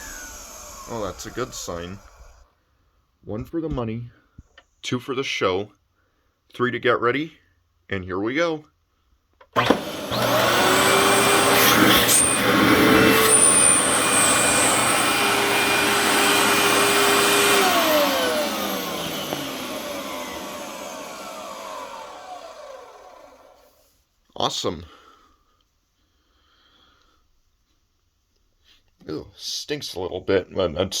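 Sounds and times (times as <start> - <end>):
vacuum motor running: 0.0 - 2.4, 9.6 - 23.8
vacuum switch click: 9.6 - 10.4, 16.6 - 20.2.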